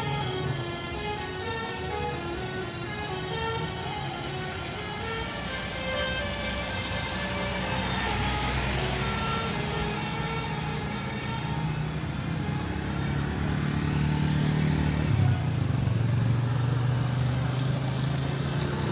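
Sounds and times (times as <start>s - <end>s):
bus musical horn tune: 0.0s - 14.6s
bus engine rumble: 0.0s - 18.9s.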